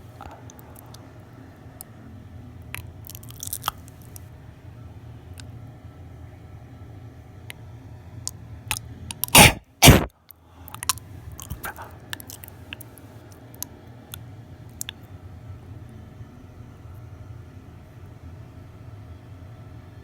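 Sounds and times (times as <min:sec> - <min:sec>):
person coughing hard: 0:09.3 - 0:10.1.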